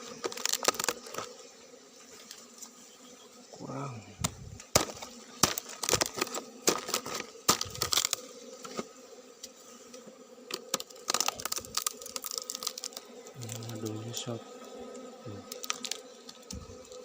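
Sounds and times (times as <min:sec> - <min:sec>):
dry wood cracking and tearing: 0:00.0 - 0:01.3, 0:04.2 - 0:08.9, 0:10.5 - 0:14.0, 0:15.0 - 0:17.0
sharp wood snaps: 0:04.2 - 0:08.2, 0:10.5 - 0:13.8, 0:15.5 - 0:17.0.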